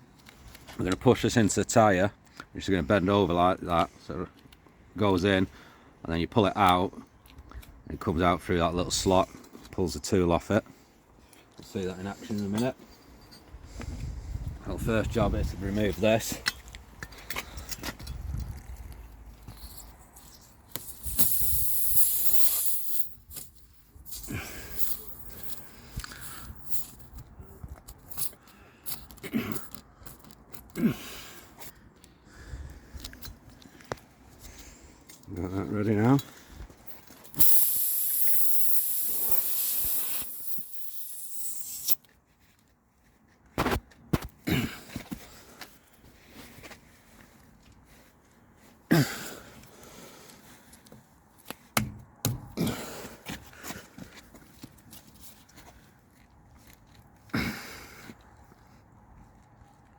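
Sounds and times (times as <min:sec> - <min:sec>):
air hissing from tyre: 0:20.2 - 0:27.1, 0:37.3 - 0:42.0.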